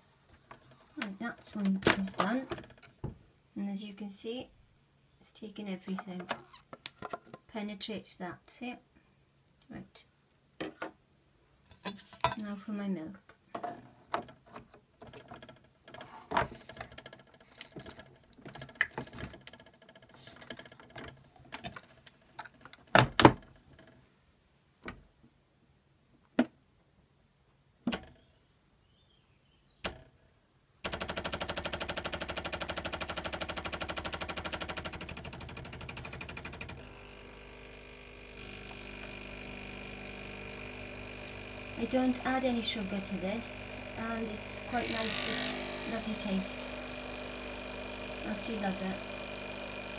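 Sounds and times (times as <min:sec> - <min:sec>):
coffee machine pump pulsing: 0:30.9 - 0:49.9.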